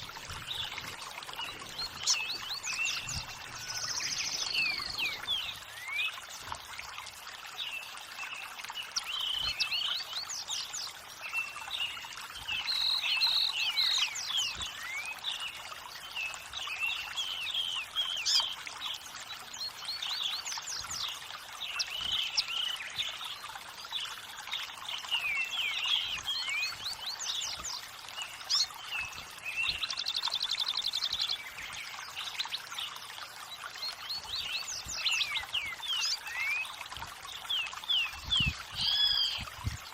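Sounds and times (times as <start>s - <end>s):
birds chirping and singing: 0.0s - 6.2s, 37.5s - 39.8s
running water hiss: 0.0s - 39.9s.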